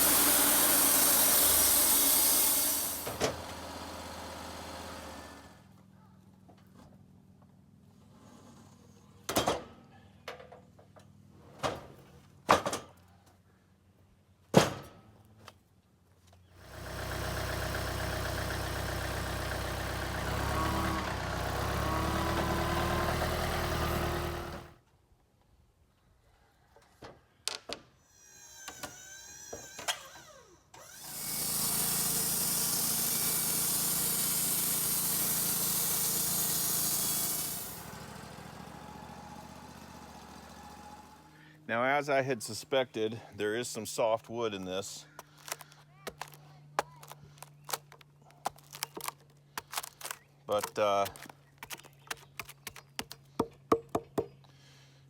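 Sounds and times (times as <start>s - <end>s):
band sawmill sawing wood: 0.0s - 5.6s, 16.6s - 24.8s, 28.1s - 54.3s
sharp knocks and clicks: 46.1s - 54.3s.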